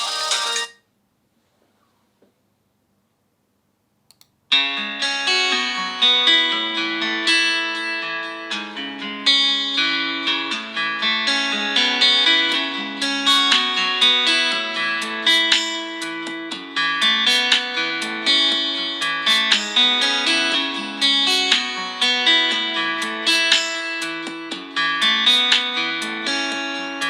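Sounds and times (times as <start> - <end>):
plucked guitar ringtone: 0.0 - 0.7
faint clicks: 4.1 - 4.3.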